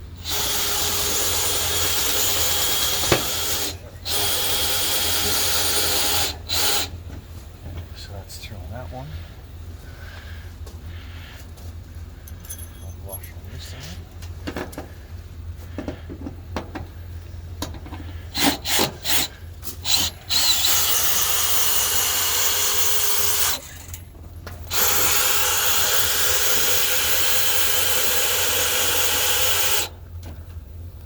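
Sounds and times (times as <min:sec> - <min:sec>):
power drill driving a bolt: 0:00.2 - 0:07.0, 0:18.3 - 0:24.0, 0:24.6 - 0:29.9.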